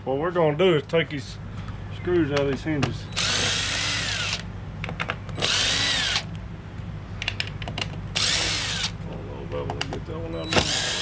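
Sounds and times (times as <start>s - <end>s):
power drill motor whine: 3.1s - 4.5s, 5.4s - 6.3s, 8.2s - 9.0s, 10.4s - 11.0s.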